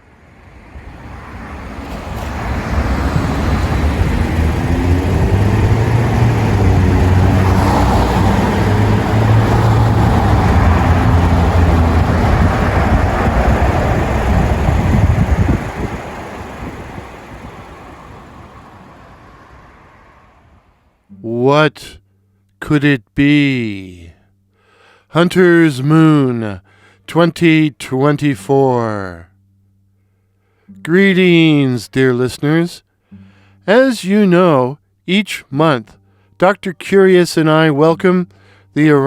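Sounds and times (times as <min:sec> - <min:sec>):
vehicle road noise rumble: 0:00.0 - 0:21.1.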